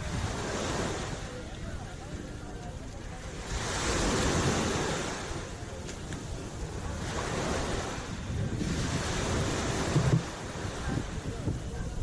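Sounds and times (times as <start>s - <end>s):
sea waves washing ashore: 0.0s - 12.0s
wind buffeting microphone: 0.0s - 12.0s.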